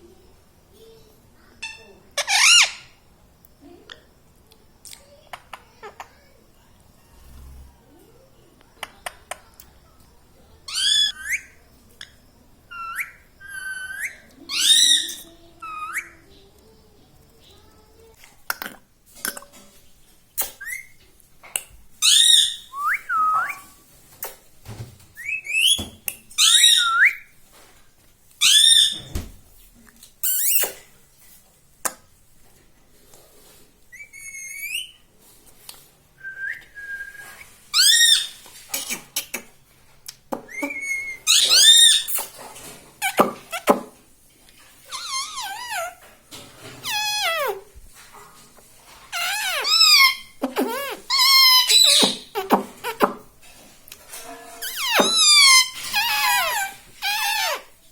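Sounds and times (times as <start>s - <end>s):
parrot shrill calls: 1.6s - 3.0s, 10.7s - 11.6s, 12.7s - 16.1s, 22.0s - 23.7s, 26.4s - 27.3s, 28.4s - 29.0s, 33.9s - 35.0s, 37.7s - 38.4s, 40.5s - 42.3s, 44.9s - 45.9s, 46.8s - 47.6s, 49.1s - 52.4s, 54.6s - 57.6s.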